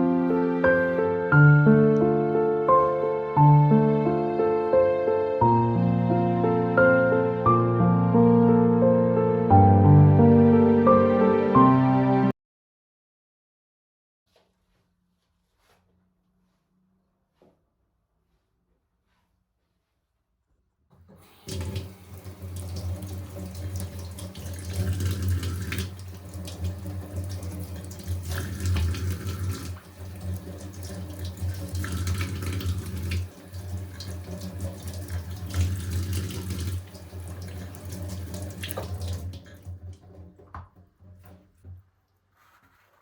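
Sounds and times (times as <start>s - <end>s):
tap water running into sink: 21.1s - 41.8s.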